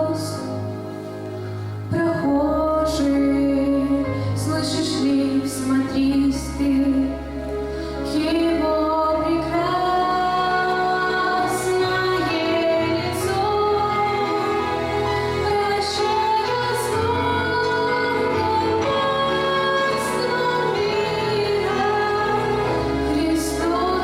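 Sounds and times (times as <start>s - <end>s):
low instrumental accompaniment: 0.0s - 24.0s
women singing: 8.1s - 24.0s.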